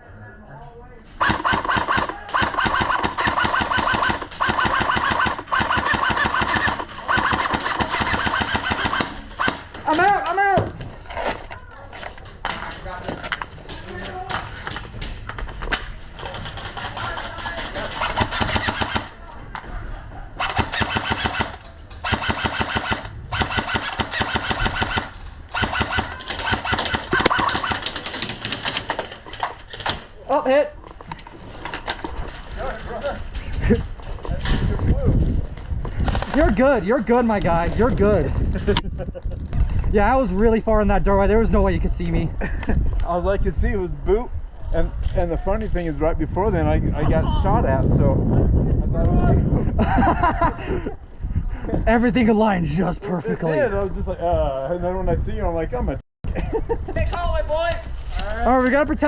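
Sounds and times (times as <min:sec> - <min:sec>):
airsoft gun firing full-auto: 0:01.2 - 0:09.6, 0:18.0 - 0:19.1, 0:20.4 - 0:27.8.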